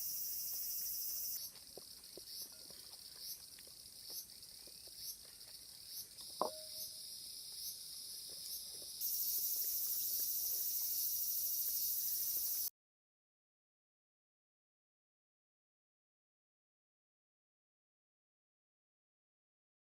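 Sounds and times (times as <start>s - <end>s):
insect steady high buzz: 0.0s - 12.7s
insects pulsing song: 0.0s - 12.7s.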